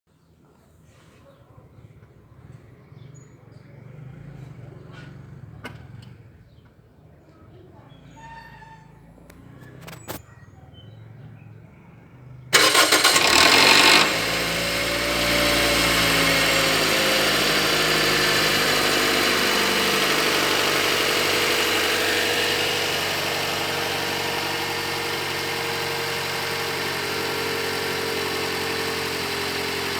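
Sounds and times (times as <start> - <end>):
car engine idling: 12.6 - 29.9
engine starter cranking: 12.6 - 29.9.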